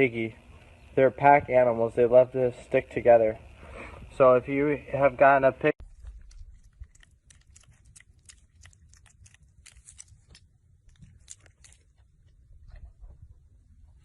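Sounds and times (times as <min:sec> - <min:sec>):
animal chewing crisp food: 0:05.8 - 0:13.2.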